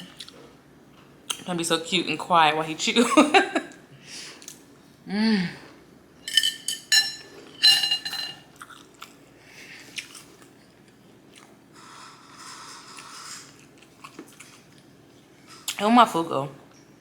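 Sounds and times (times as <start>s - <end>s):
ringing clink of cutlery: 6.3s - 8.4s
close chewing and biting: 9.8s - 12.0s, 12.6s - 14.9s.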